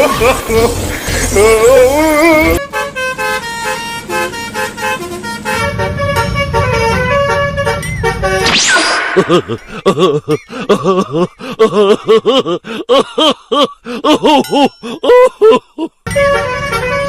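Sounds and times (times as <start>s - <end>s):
cartoonish voice giggling: 0.0s - 2.2s, 9.0s - 16.0s
quick swoosh: 8.4s - 9.4s.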